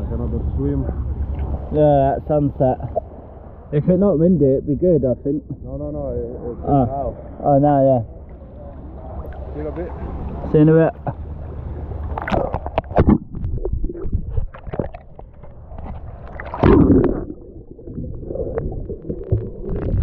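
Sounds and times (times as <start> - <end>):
low rumble: 0.0 - 20.0
sea water splashing: 1.0 - 3.7, 8.1 - 20.0.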